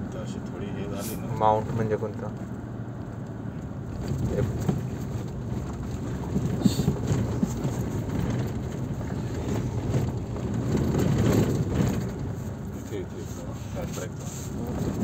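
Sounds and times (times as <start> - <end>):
car cabin noise while driving: 0.0 - 15.0
rattling knocks: 4.0 - 12.7.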